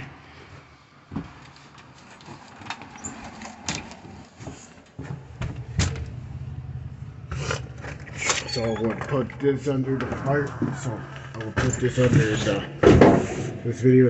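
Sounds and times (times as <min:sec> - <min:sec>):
steady low hum: 0:05.2 - 0:13.6.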